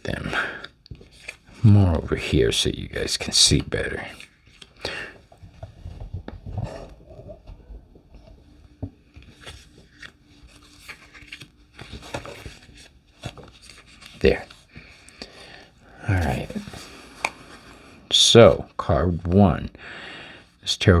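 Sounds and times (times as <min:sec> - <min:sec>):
cards sliding on a table: 0:16.0 - 0:17.9.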